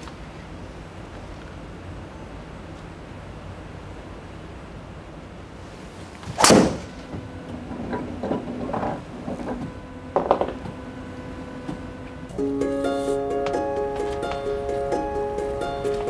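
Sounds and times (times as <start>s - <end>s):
golf club striking ball: 6.4s - 7.0s.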